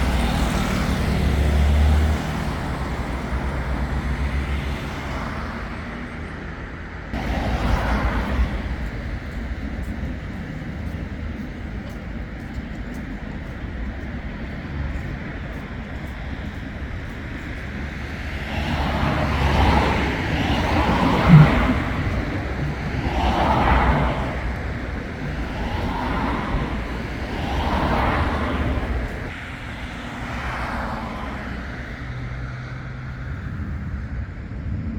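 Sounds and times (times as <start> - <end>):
vehicle passing by: 0.0 - 6.5, 14.9 - 34.9
heavy vehicle engine running: 0.0 - 34.9
road noise of passing cars: 0.0 - 34.9.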